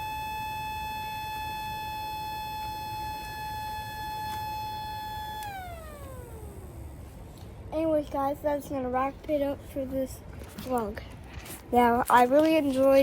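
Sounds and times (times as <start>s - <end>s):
tornado siren winding down: 0.0s - 7.2s.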